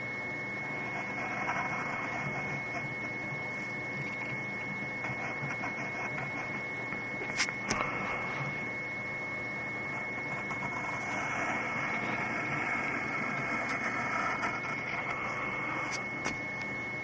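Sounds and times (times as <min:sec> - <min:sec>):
high electrical whine: 0:00.0 - 0:17.0
pen scratching on paper: 0:00.6 - 0:06.6, 0:10.0 - 0:16.4.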